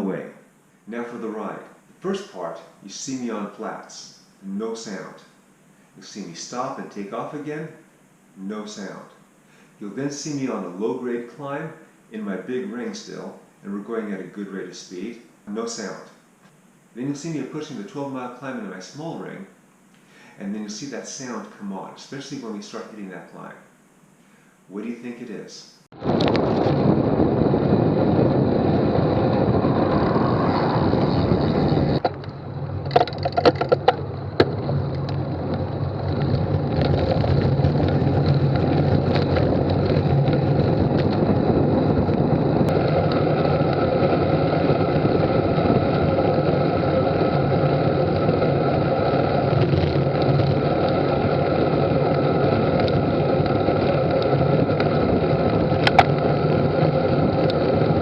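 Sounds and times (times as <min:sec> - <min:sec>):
bike tyre noise: 0:26.0 - 0:58.0
wind rush: 0:26.0 - 0:58.0.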